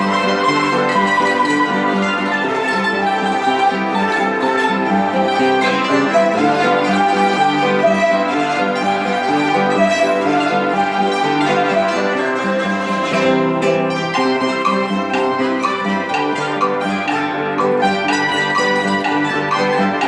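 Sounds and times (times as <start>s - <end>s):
plucked zither ensemble melody: 0.0s - 20.0s.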